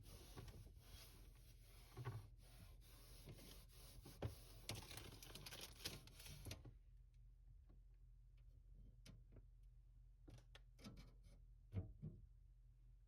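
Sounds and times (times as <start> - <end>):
rustling of small objects: 4.8 - 6.2.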